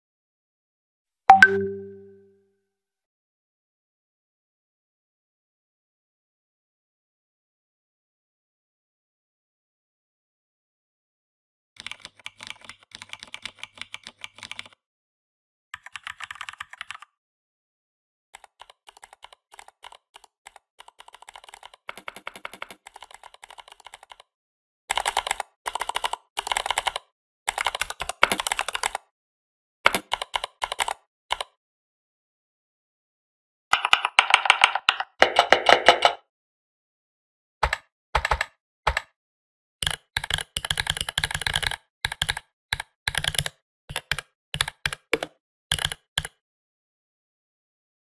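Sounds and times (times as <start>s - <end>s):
mechanical keyboard key clicks: 39.8s - 46.4s.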